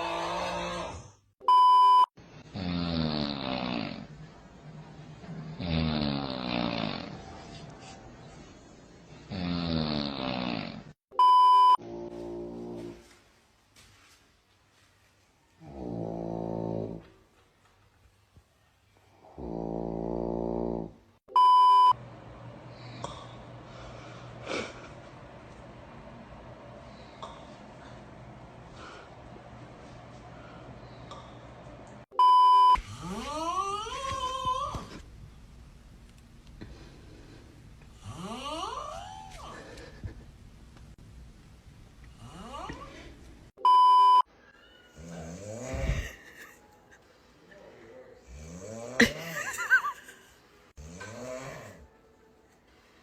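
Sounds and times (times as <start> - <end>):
person snoring: 0.0 - 1.2, 2.4 - 4.1, 5.5 - 7.4, 9.2 - 11.0, 19.2 - 21.0, 37.9 - 40.0, 45.0 - 46.2, 47.8 - 49.3, 50.8 - 51.9.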